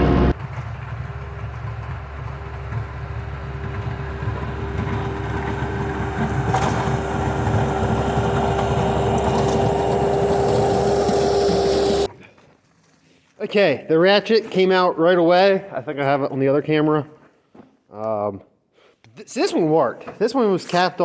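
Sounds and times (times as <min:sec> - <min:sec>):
skid steer engine running: 0:00.0 - 0:12.1.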